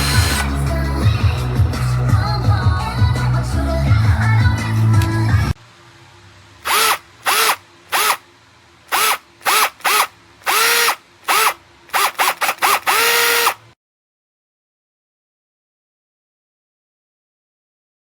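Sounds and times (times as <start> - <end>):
cordless drill whirring: 0.0 - 0.5, 6.6 - 8.2, 8.9 - 13.7.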